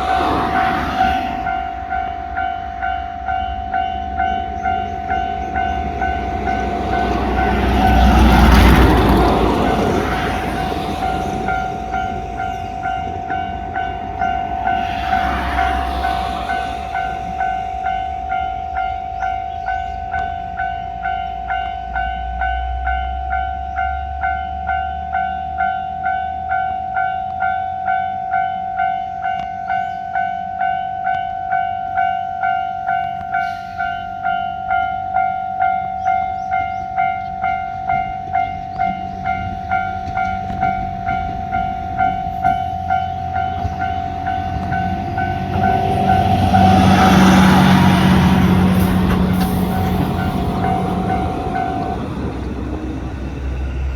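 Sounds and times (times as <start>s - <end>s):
train noise: 0.0s - 53.9s.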